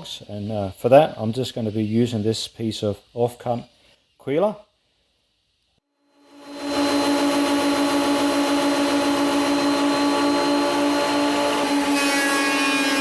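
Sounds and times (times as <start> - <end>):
power tool humming: 6.2 - 13.0.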